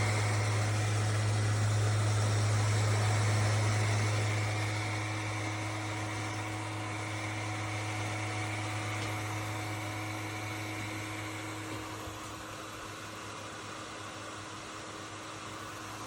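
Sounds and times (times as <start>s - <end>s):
low hum: 0.0s - 12.3s
fan heater air rush: 0.0s - 16.0s.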